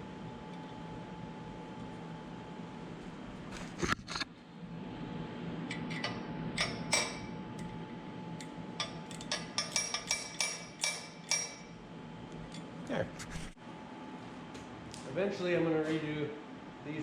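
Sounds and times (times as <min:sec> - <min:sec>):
steady low hum: 0:00.0 - 0:17.0
hand tools tapping on steel: 0:08.4 - 0:11.6.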